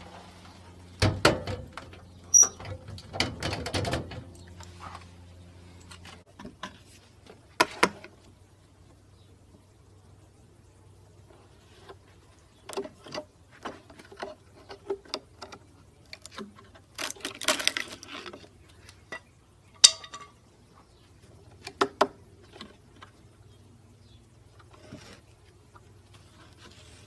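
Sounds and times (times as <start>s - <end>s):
scraping rustle: 0.0s - 8.1s, 24.6s - 27.0s.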